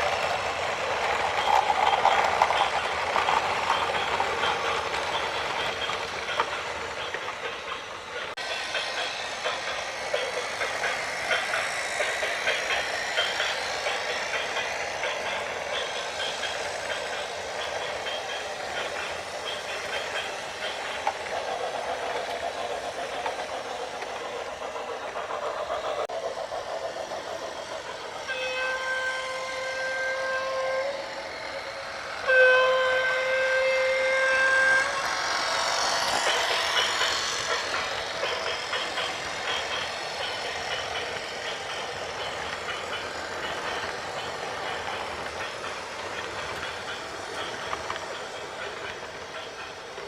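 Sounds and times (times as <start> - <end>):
horn blasts: 28.3 - 31.2, 32.2 - 35.0.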